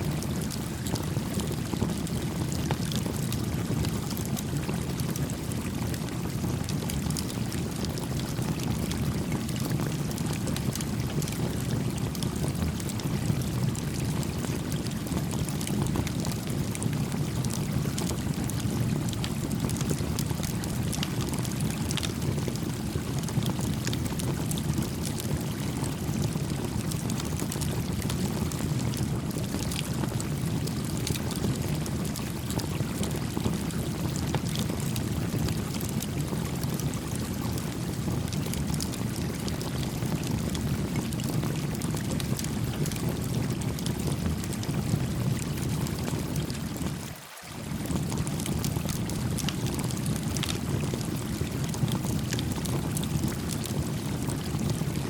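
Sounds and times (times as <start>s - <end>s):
campfire crackling: 14.7s - 25.4s
stream flowing: 47.0s - 47.5s.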